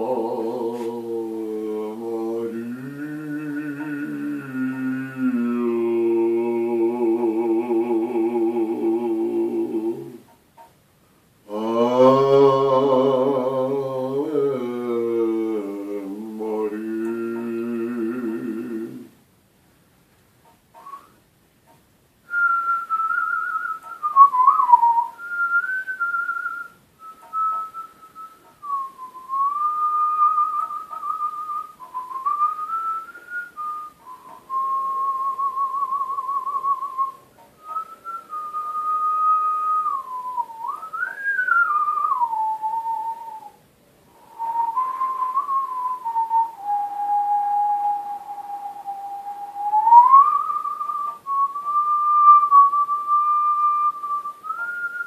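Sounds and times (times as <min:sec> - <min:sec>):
lip whistling a slow melody: 0:20.8 - 0:21.2, 0:22.2 - 0:43.6, 0:44.2 - 0:55.0.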